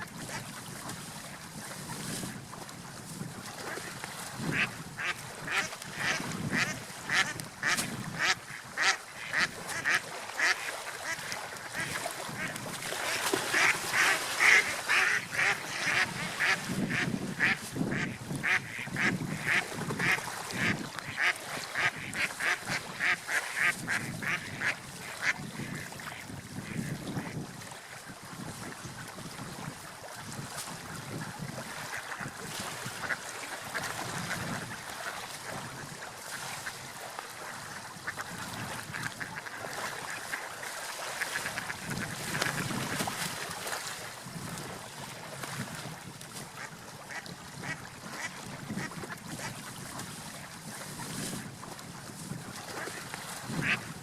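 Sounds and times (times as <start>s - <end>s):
ducks quacking: 4.5s - 26.1s, 32.9s - 35.8s, 46.6s - 49.5s, 53.6s - 53.9s.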